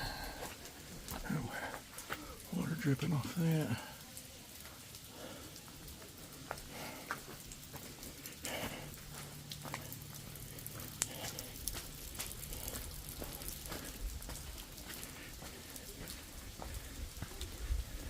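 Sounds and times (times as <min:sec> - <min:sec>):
falling water wash: 0:00.0 - 0:18.0
water drops pattering: 0:00.0 - 0:18.0.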